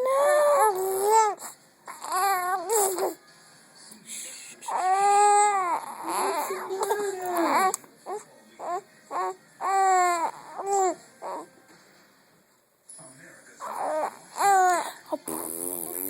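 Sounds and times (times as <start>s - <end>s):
baby crying: 0.0s - 3.2s, 4.7s - 11.5s, 13.6s - 16.0s.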